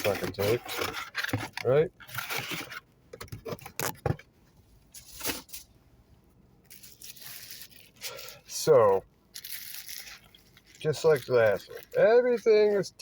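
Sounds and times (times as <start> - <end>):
plastic bags rustling: 9.4 - 13.0.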